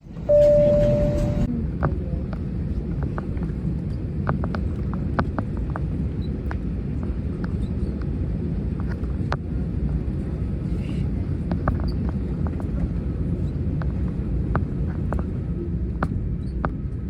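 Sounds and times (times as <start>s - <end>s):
steady tone: 0.0s - 1.5s
airliner cabin rumble: 0.0s - 17.0s.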